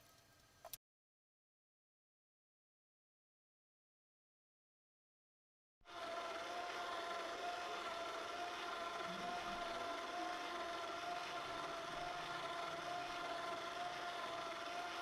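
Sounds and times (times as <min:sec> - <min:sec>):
power drill motor whining: 0:05.9 - 0:15.0.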